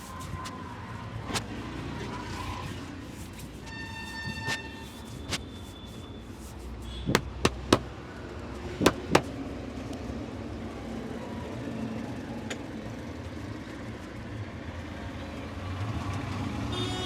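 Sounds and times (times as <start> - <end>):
street traffic noise: 0.0 - 17.0
sharp hand slaps: 6.4 - 7.9, 8.8 - 9.3.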